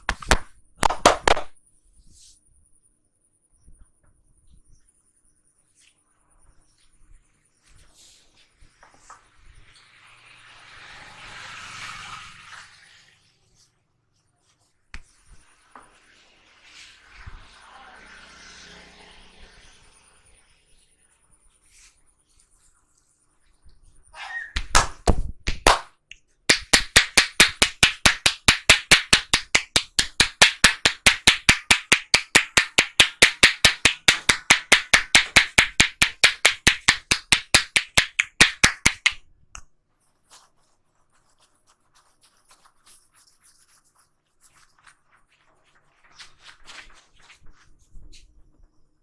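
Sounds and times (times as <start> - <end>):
hands tapping on head: 0.0 - 1.5, 24.6 - 25.9, 26.5 - 39.7
faint rubbing: 39.9 - 48.9.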